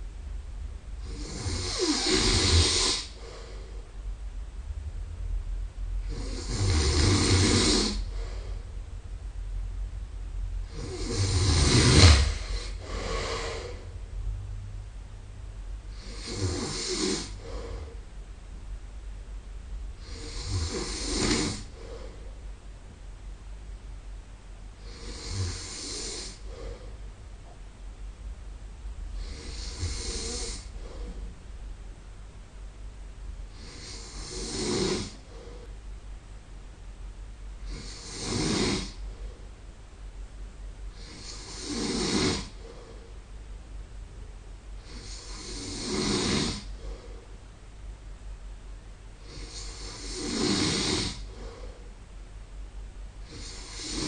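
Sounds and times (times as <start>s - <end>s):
man snoring: 1.0s - 3.6s, 6.0s - 8.5s, 10.6s - 13.9s, 15.9s - 18.0s, 20.0s - 22.1s, 24.8s - 26.9s, 29.2s - 31.1s, 33.5s - 35.7s, 37.6s - 39.0s, 41.0s - 42.7s, 44.8s - 47.1s, 49.2s - 51.7s, 53.2s - 54.0s.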